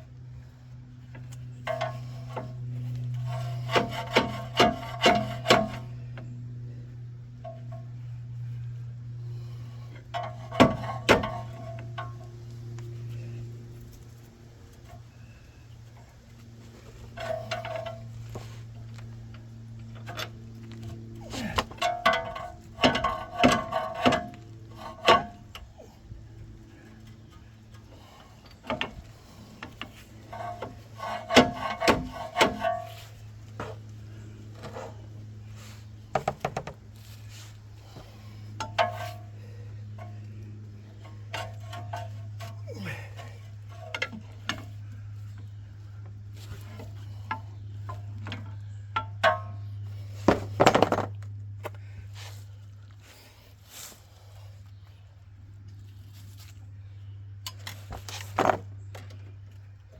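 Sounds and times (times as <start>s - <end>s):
steady low hum: 0.0s - 59.9s.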